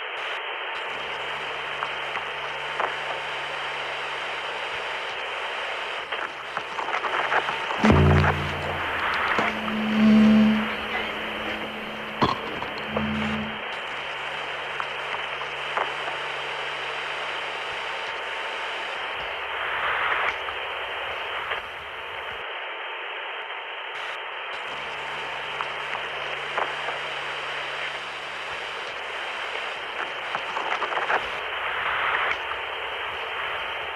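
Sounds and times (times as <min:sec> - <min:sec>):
static crackles: 0:00.0 - 0:22.4, 0:24.0 - 0:33.9
radio static hiss: 0:00.0 - 0:22.5, 0:23.9 - 0:33.9
low electrical buzz: 0:07.8 - 0:18.0.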